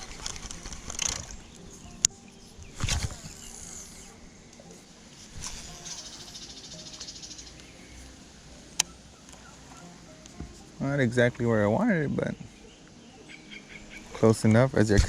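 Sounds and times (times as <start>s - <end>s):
fishing rod swish and clatter: 0.0s - 1.4s, 2.6s - 6.3s
fishing reel whirring: 2.8s - 4.2s, 5.3s - 7.5s.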